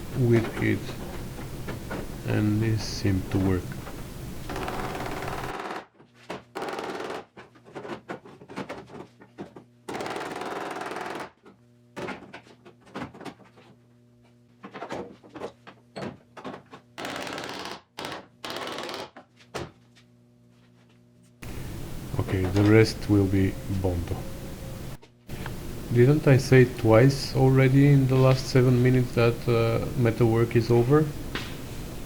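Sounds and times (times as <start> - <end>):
steady noise: 0.0 - 5.5, 21.4 - 32.0.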